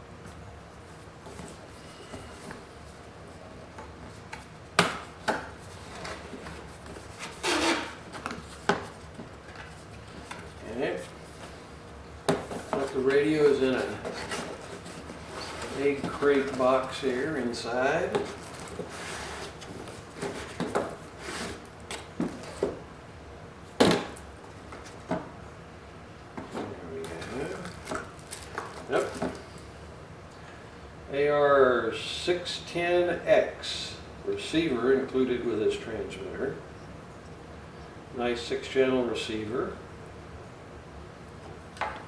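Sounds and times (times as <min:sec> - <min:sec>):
cardboard scraping: 0:05.7 - 0:09.0, 0:12.4 - 0:17.0, 0:18.1 - 0:21.7.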